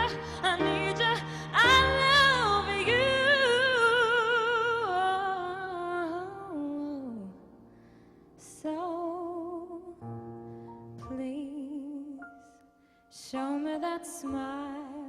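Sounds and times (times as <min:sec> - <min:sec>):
woman singing with vibrato: 0:00.0 - 0:07.4.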